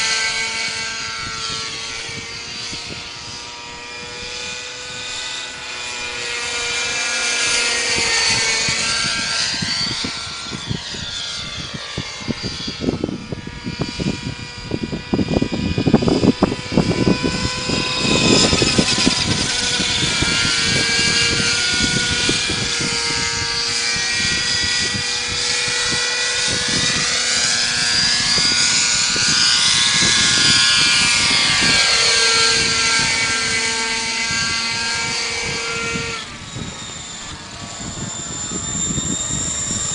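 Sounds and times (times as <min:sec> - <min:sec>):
model helicopter engine whine: 0:00.0 - 0:39.9
wind buffeting on microphone: 0:00.0 - 0:39.9.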